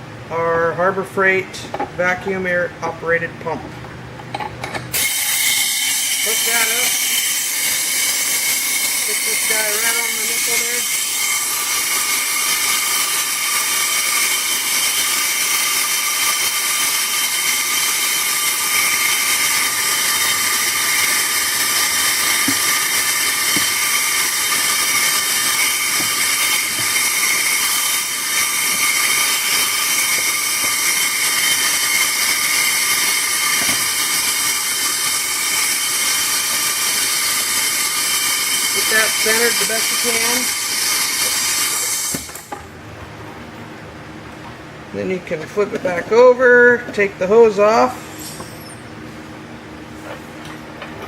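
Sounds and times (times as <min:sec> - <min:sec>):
vacuum pump hissing: 0:04.9 - 0:42.5.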